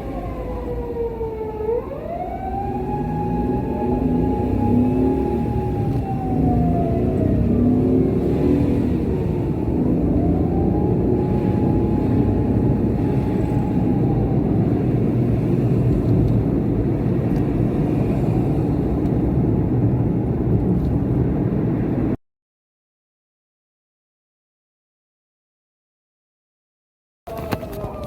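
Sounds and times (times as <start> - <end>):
emergency vehicle siren wailing: 0.0 - 16.3, 27.3 - 28.0
road and engine rumble: 0.0 - 22.2, 27.3 - 28.0.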